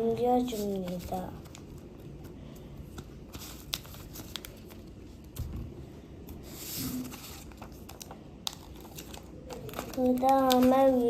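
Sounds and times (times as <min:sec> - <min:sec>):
paper rustling and crinkling: 0:00.2 - 0:05.6, 0:06.3 - 0:11.0
small paper ticks: 0:07.9 - 0:11.0.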